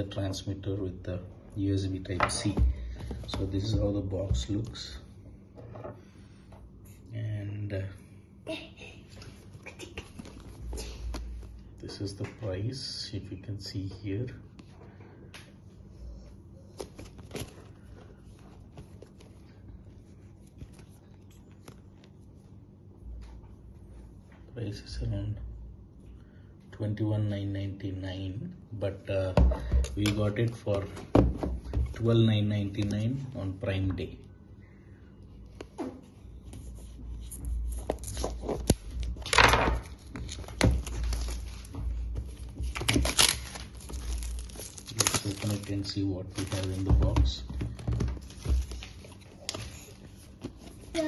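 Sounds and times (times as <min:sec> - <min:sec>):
steady low hum: 0:00.0 - 0:51.0.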